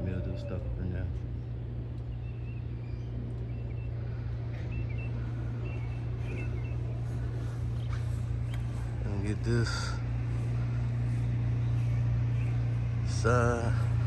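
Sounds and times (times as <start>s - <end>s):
birds chirping: 0.0s - 14.0s
pressure washer engine running: 6.6s - 14.0s.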